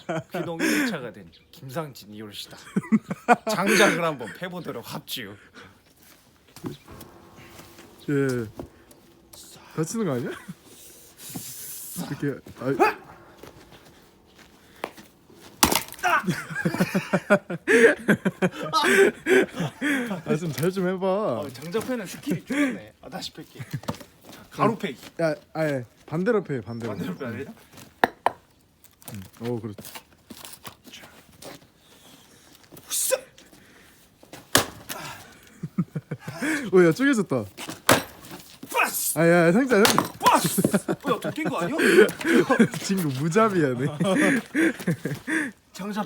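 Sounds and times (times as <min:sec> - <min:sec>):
people laughing: 0:00.0 - 0:00.9, 0:02.5 - 0:04.5, 0:15.9 - 0:20.6, 0:35.0 - 0:36.8, 0:40.2 - 0:45.7
people talking: 0:00.0 - 0:05.4, 0:06.9 - 0:13.8, 0:16.0 - 0:23.8, 0:24.5 - 0:27.6, 0:38.7 - 0:46.0
axe striking log: 0:14.4 - 0:16.8, 0:34.5 - 0:35.0, 0:37.6 - 0:38.4, 0:39.7 - 0:40.8
log splitting with a crack: 0:15.5 - 0:16.1.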